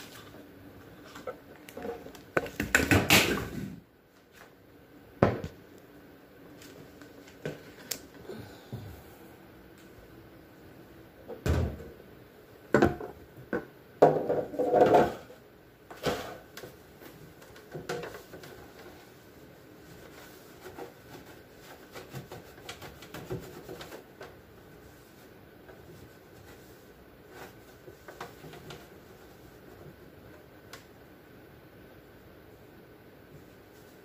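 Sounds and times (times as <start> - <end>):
bottles knocking in refrigerator: 12.7 - 15.2.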